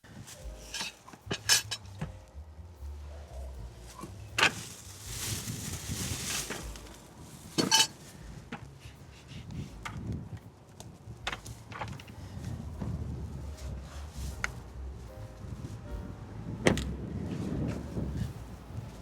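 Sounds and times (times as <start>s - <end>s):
cookware and utensils clinking: 0.6s - 2.0s, 7.6s - 8.0s.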